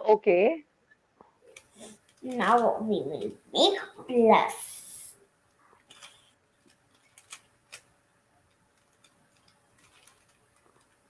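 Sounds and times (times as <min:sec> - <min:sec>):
puzzle cube plastic clicks: 0:05.8 - 0:07.9, 0:08.5 - 0:11.0.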